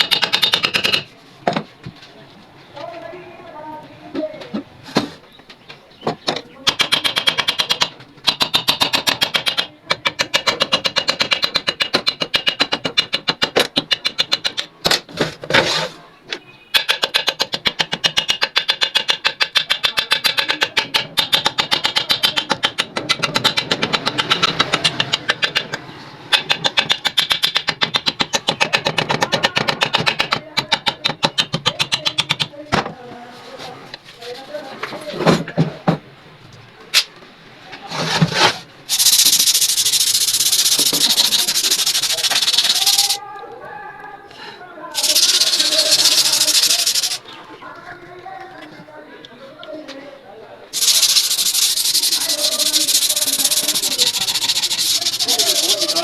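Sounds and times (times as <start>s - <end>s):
sewing machine clattering: 16.8s - 32.5s, 50.8s - 56.0s.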